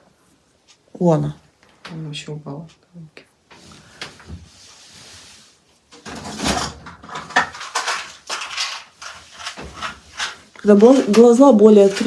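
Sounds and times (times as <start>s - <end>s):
small objects clattering: 6.0s - 12.0s.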